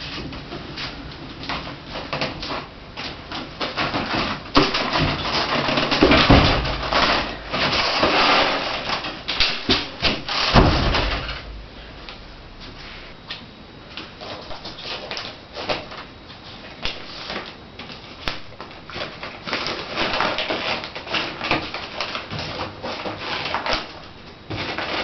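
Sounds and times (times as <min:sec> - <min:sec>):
handling rustling and scraping: 0:00.0 - 0:13.4
heavy thumps: 0:10.1 - 0:12.9.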